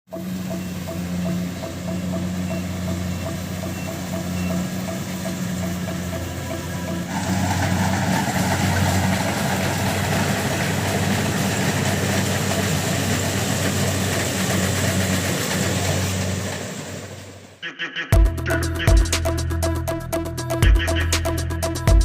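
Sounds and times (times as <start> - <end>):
combine harvester diesel engine: 0.1 - 17.6.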